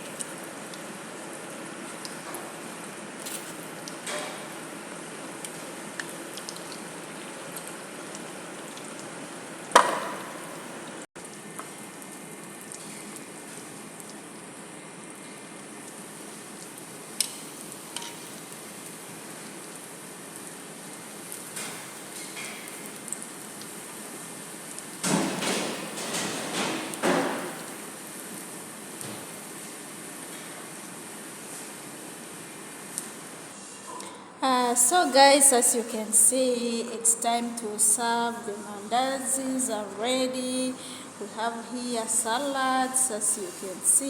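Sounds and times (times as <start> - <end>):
dough deep-frying in hot oil: 0.0 - 33.7
sharp knocks: 9.8 - 10.6.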